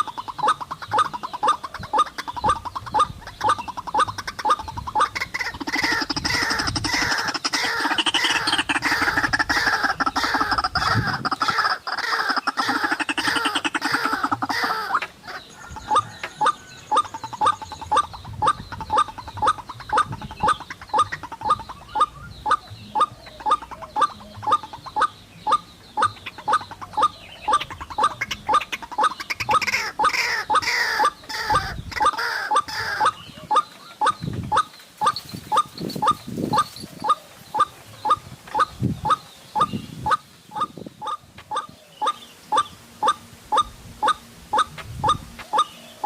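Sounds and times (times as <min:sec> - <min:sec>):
bird croaking calls: 0:00.0 - 0:46.0
bird repeated notes: 0:00.0 - 0:46.0.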